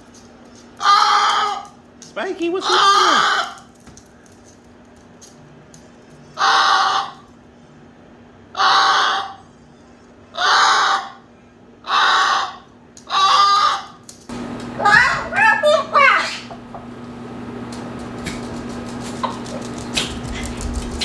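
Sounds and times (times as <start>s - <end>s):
cockatoo screeching: 0.8s - 1.8s, 2.6s - 3.7s, 6.4s - 7.3s, 8.5s - 9.4s, 10.3s - 16.8s.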